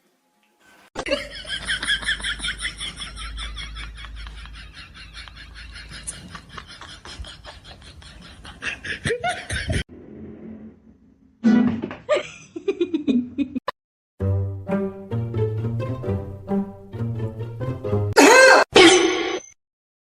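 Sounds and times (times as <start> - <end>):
people laughing: 1.0 - 9.8
music: 14.2 - 18.2.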